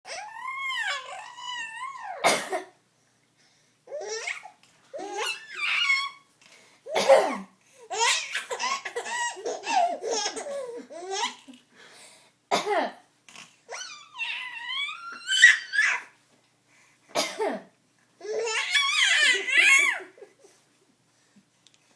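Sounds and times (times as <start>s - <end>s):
woman coughing: 2.2s - 2.7s, 7.0s - 7.5s, 12.5s - 13.0s, 17.2s - 17.7s
baby laughing: 7.9s - 11.6s, 18.2s - 20.6s.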